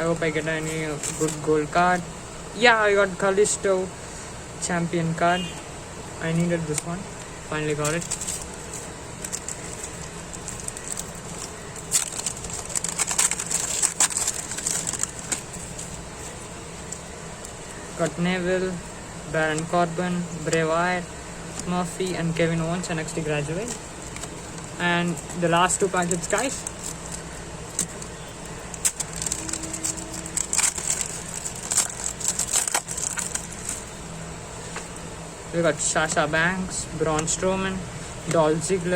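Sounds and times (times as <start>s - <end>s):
foil packet crinkling and tearing: 0.2s - 1.8s, 7.7s - 18.2s, 19.5s - 34.1s.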